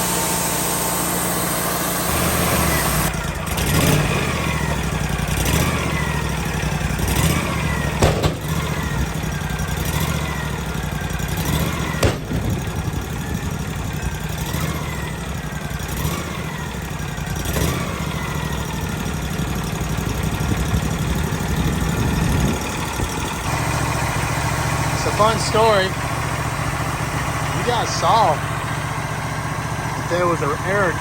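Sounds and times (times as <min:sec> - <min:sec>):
sawmill engine idling: 0:00.0 - 0:31.0
sharp knock: 0:08.0 - 0:08.6
short whines: 0:11.7 - 0:13.5.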